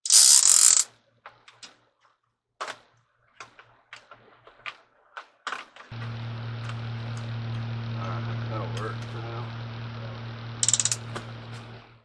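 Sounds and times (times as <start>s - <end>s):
ratchet clicks: 0.0s - 0.8s, 10.6s - 11.2s.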